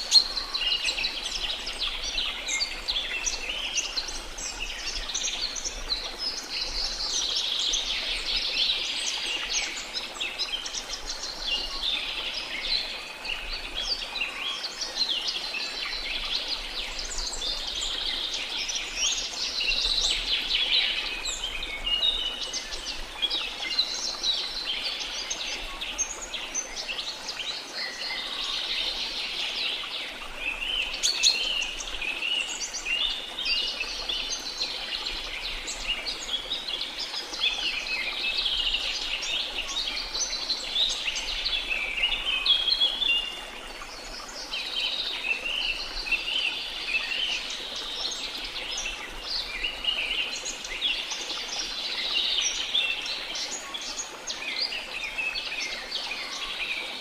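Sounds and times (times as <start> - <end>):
birds chirping and trilling: 0.0 - 14.6.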